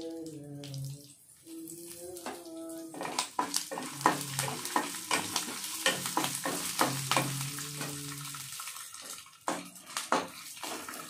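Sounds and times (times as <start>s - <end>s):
food sizzling: 0.0s - 11.0s
utensil scraping a frying pan: 2.9s - 8.1s, 9.0s - 11.0s.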